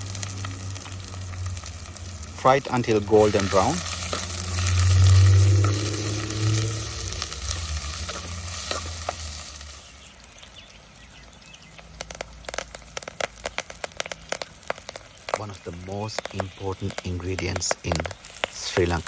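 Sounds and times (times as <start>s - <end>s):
low hum: 0.0s - 9.7s
oil crackling and popping: 0.0s - 19.0s
onion sizzling in hot oil: 0.0s - 19.0s.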